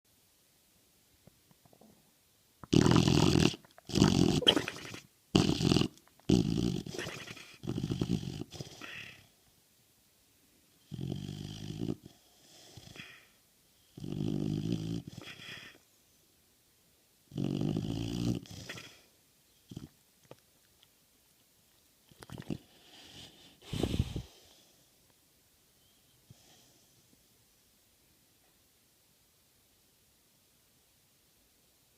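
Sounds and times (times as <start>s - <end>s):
dog snoring: 2.6s - 9.3s, 10.8s - 15.8s, 17.3s - 20.0s.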